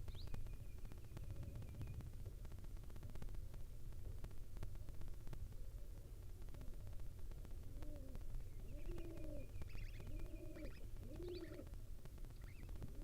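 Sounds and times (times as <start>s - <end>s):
small bird chirping: 0.0s - 2.1s, 8.4s - 11.7s, 12.3s - 12.8s
dove cooing: 7.6s - 11.8s.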